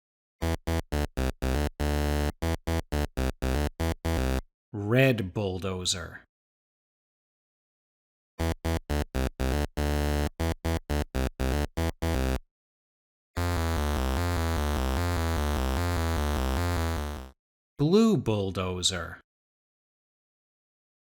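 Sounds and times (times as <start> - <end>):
buzzy synthesized tone: 0.9 - 2.3, 2.9 - 4.4, 8.4 - 12.4, 13.4 - 17.3.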